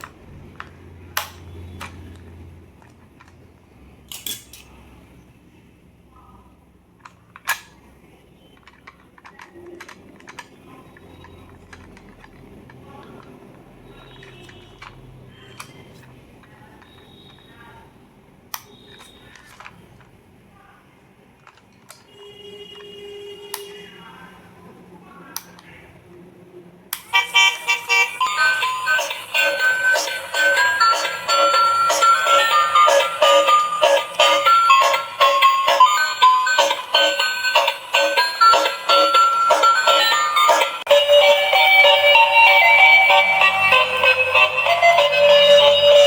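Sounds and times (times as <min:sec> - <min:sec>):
hard objects clicking and clacking: 0:00.0 - 0:04.7, 0:08.5 - 0:17.4, 0:21.3 - 0:22.1.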